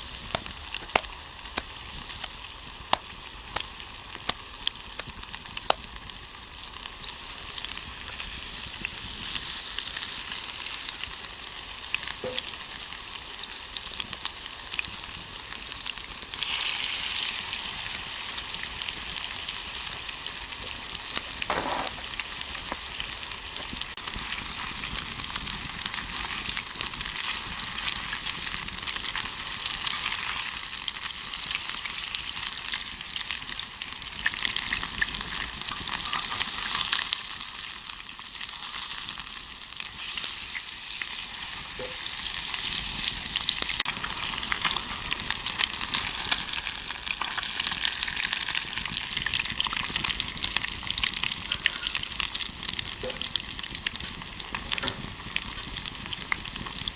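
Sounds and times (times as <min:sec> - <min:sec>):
food sizzling in a frying pan: 0:00.0 - 0:56.9
wood fire pops and crackles: 0:00.1 - 0:06.2, 0:20.6 - 0:24.0.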